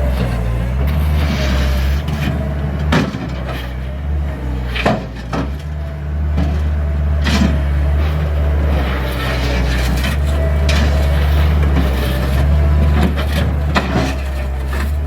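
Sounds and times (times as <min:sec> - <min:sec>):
clunks and scrapes: 0:00.0 - 0:15.0
skid steer engine running: 0:00.0 - 0:15.0.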